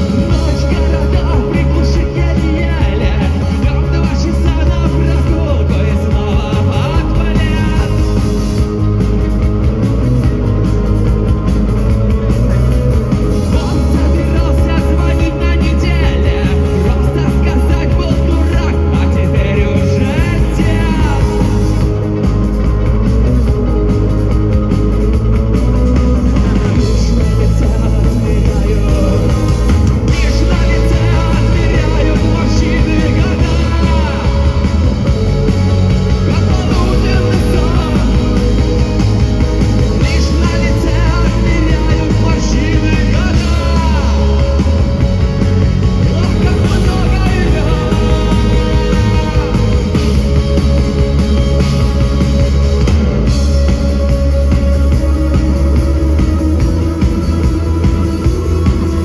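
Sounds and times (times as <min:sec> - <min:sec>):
live rock band with singer: 0:00.0 - 0:59.0.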